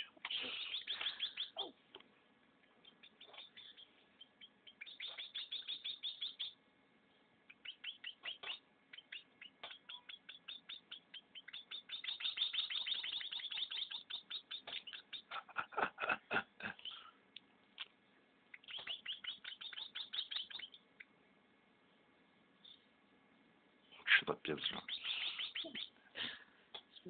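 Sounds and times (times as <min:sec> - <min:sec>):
baby birds chirping: 0:00.2 - 0:01.8, 0:02.8 - 0:06.6, 0:07.4 - 0:15.4, 0:18.5 - 0:21.2, 0:24.5 - 0:26.0.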